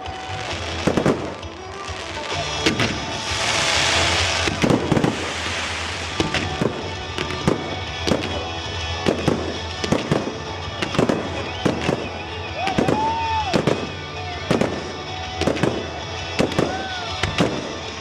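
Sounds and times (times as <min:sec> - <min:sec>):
hissing crackle: 0:00.0 - 0:08.3
fireworks bursting: 0:00.0 - 0:18.0
music: 0:00.0 - 0:18.0.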